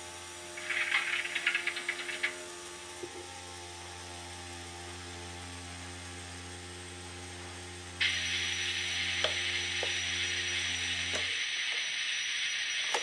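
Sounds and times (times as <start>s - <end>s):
rapid mechanical clicking and rattling: 0.0s - 3.4s
faint low motor hum: 0.0s - 13.0s.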